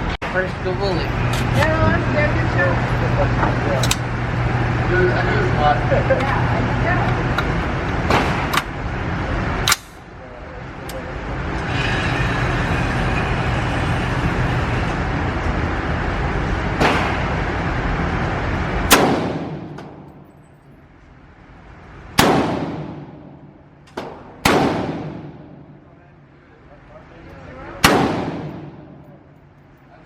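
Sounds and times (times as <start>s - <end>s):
gunshots with echo: 18.9s - 20.1s, 22.2s - 23.4s, 24.0s - 25.7s, 27.8s - 29.0s.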